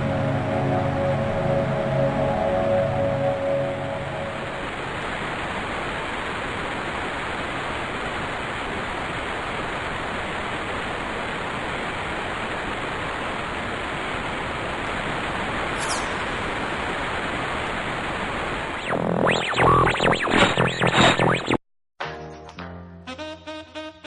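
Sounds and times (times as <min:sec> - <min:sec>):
static white noise hiss: 0:00.0 - 0:21.6.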